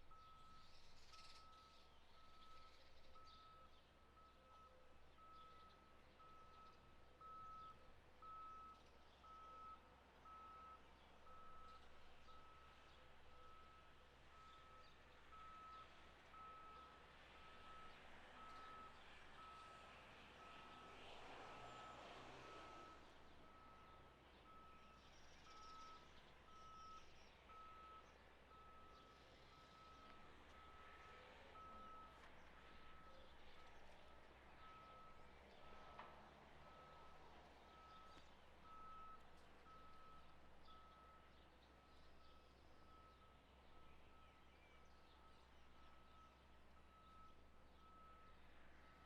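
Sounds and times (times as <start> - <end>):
faint warning beeps: 0.0 - 49.0.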